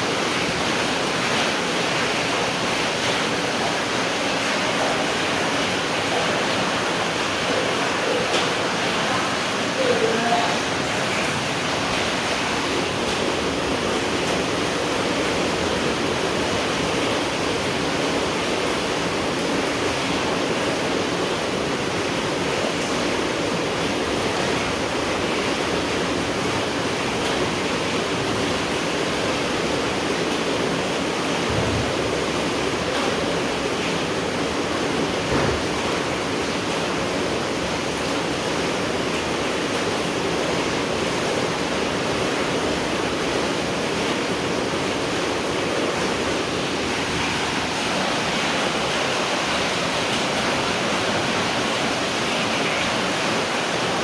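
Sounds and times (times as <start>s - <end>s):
dense rain falling: 0.0s - 54.0s
brief low thud: 31.5s - 32.0s.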